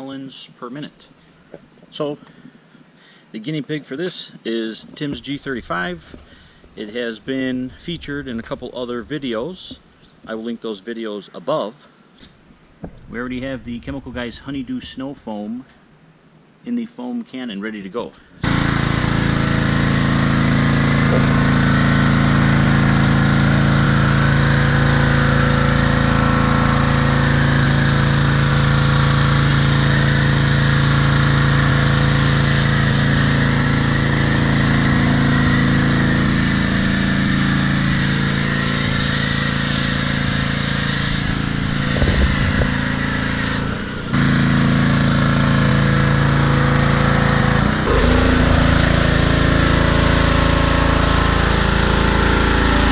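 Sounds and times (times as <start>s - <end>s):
pressure washer engine running: 18.4s - 52.9s
hiss of spray: 26.1s - 45.2s.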